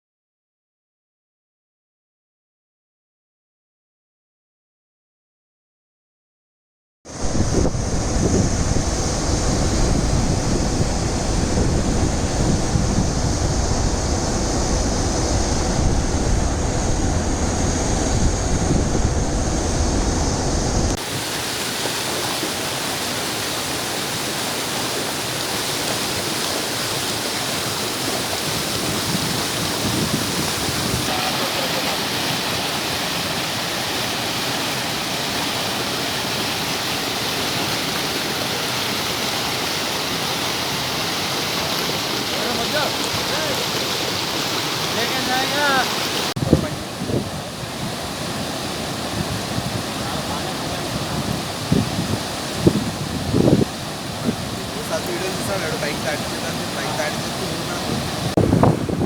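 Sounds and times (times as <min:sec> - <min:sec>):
wind rumble on microphone: 0:07.1 - 0:21.5, 0:25.4 - 0:32.0, 0:46.3 - 0:59.0
rushing floodwater: 0:07.1 - 0:59.0.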